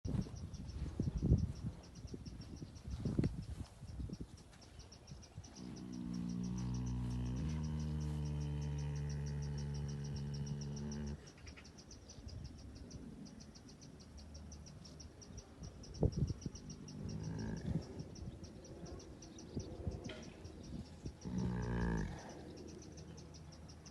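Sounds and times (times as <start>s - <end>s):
cricket chirping: 0.1s - 23.9s
horse snoring: 5.6s - 11.2s, 16.9s - 18.0s, 21.2s - 22.5s.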